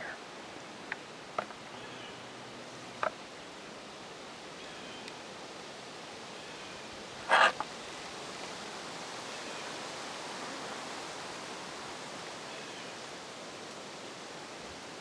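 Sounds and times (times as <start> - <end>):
rushing forest ambience: 0.0 - 15.0.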